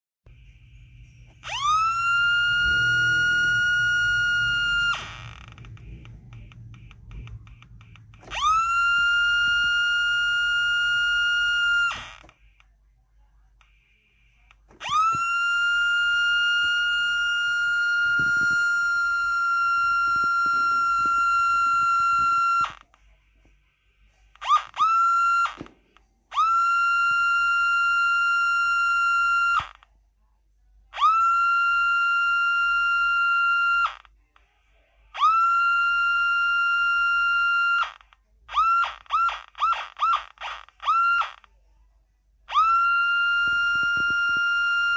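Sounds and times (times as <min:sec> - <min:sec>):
high electronic alarm tone: 0:00.3 - 0:12.6, 0:13.6 - 0:22.9, 0:24.3 - 0:29.8.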